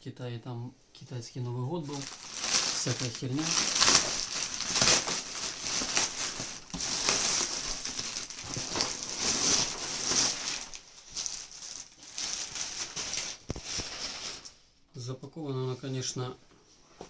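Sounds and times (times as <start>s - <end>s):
plastic packaging crinkling: 1.8s - 14.6s.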